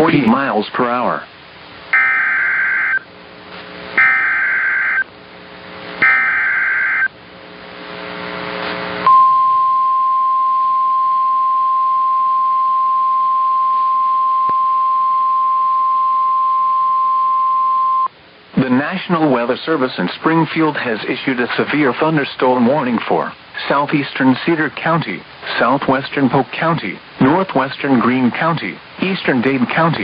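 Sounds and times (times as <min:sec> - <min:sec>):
screeching digital data tones: 0:02.0 - 0:03.0, 0:04.0 - 0:05.1, 0:06.0 - 0:07.1
steady alert tone: 0:04.0 - 0:05.0, 0:06.0 - 0:07.1
rising hiss of radio static: 0:04.8 - 0:09.1.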